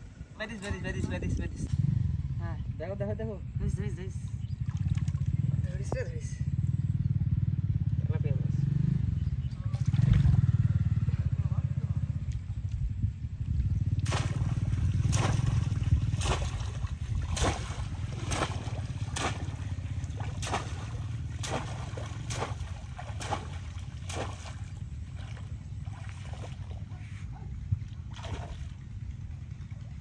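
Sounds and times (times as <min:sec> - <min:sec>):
low rumble: 0:00.0 - 0:30.0
splashing in shallow water: 0:04.6 - 0:05.6, 0:13.9 - 0:30.0.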